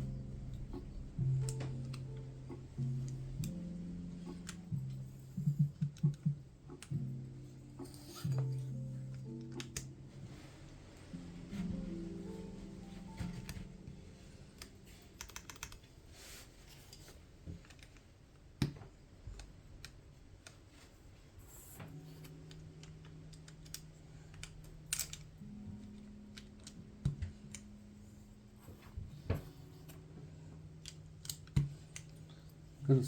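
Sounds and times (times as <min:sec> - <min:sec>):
mechanical keyboard keys clacking: 0:07.8 - 0:10.5, 0:13.2 - 0:20.6, 0:21.6 - 0:27.8.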